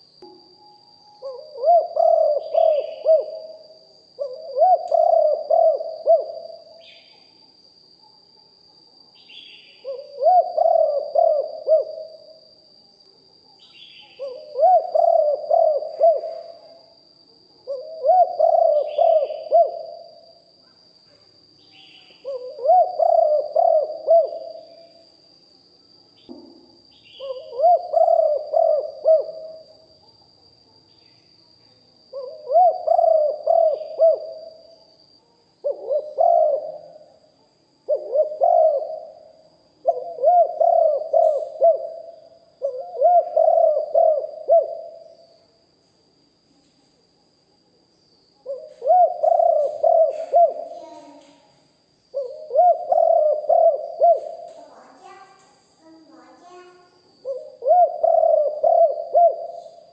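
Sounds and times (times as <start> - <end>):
dove cooing: 1.2 - 7.0, 9.8 - 12.4, 13.8 - 16.8, 17.6 - 20.3, 22.2 - 25.0, 27.2 - 29.9, 32.1 - 34.7, 35.6 - 37.1, 37.9 - 45.2, 48.4 - 51.4, 52.1 - 59.9.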